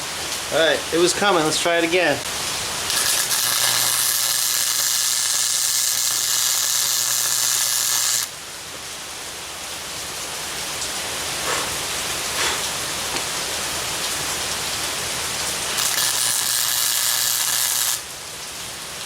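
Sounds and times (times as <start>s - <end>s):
low electrical hum: 0.0s - 19.0s
welder arc hissing and crackling: 2.2s - 8.4s, 11.4s - 13.3s, 15.6s - 18.2s.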